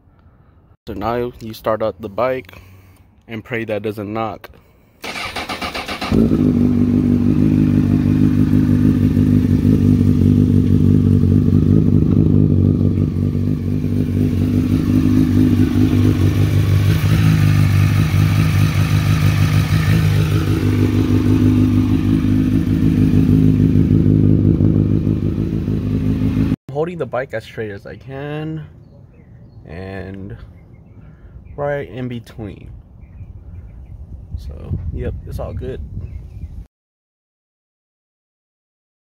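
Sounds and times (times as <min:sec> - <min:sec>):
motorcycle engine idling: 0:05.1 - 0:26.6.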